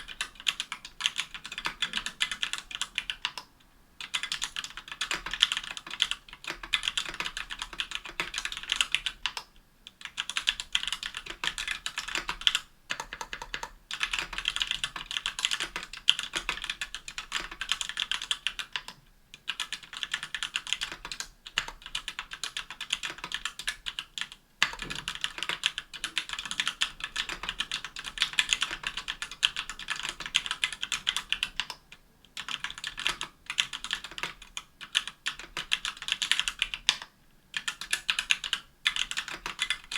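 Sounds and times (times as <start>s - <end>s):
fast typing on mechanical keyboard: 0.0s - 31.8s, 32.4s - 39.9s.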